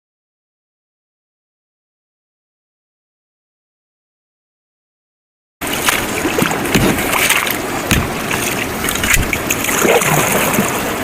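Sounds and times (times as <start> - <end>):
water splashing around a canoe: 5.6 - 11.0
dull knocks: 6.4 - 7.2, 7.9 - 8.5.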